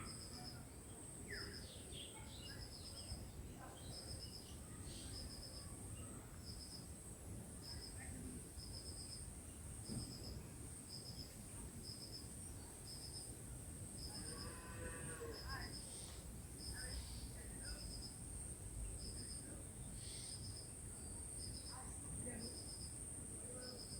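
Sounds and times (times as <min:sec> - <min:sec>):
faint bird chirps: 0:00.0 - 0:06.6, 0:18.8 - 0:21.8
insects droning: 0:00.0 - 0:23.9.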